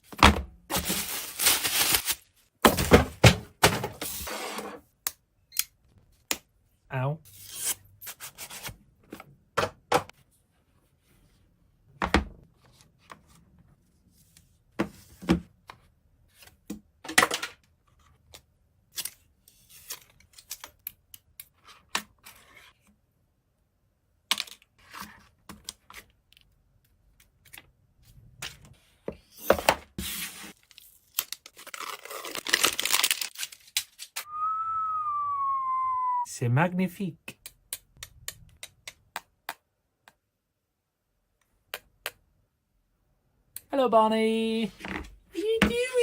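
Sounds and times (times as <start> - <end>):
packaging tearing: 0.9 - 2.2, 30.6 - 34.1.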